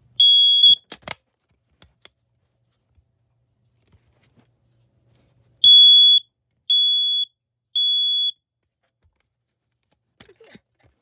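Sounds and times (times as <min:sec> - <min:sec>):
smoke alarm beeps: 0:00.2 - 0:00.8, 0:05.6 - 0:08.4.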